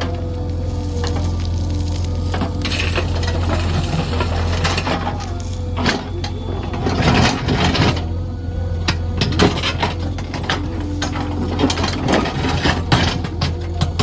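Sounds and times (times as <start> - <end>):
diesel engine running: 0.0 - 14.0
metallic clanks and knocks: 8.9 - 14.0.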